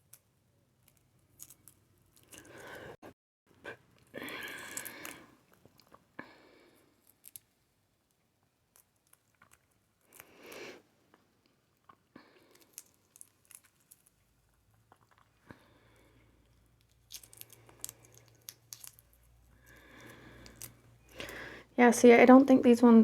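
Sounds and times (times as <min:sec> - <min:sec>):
chewing and biting egg: 0:08.6 - 0:10.6, 0:11.2 - 0:21.4.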